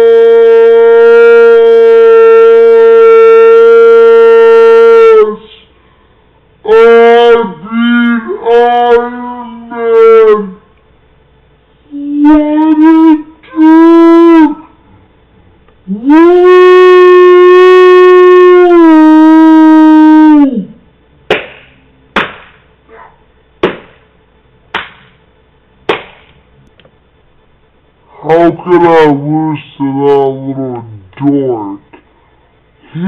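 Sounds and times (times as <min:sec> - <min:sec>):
sharp knocks: 0:21.3 - 0:22.7, 0:23.6 - 0:24.1, 0:24.7 - 0:25.2, 0:25.9 - 0:26.4.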